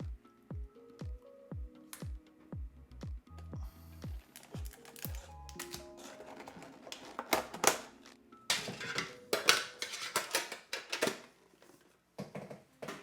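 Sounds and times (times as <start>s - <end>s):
metal tin clinking and scraping: 4.4s - 11.3s.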